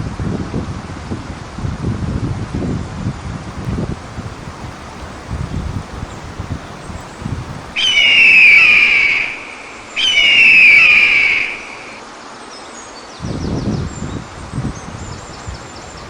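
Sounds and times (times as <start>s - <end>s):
long high whistles: 3.7s - 12.0s.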